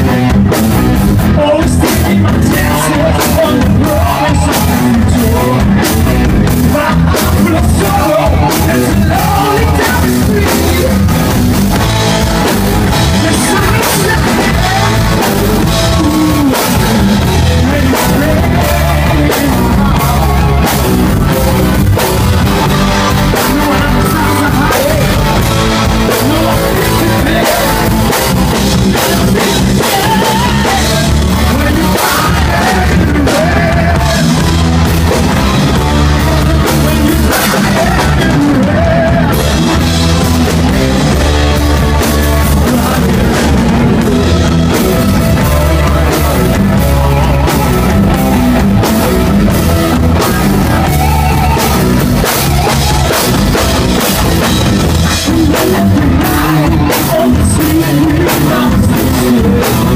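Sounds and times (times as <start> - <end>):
rock band playing live: 0.0 - 59.9.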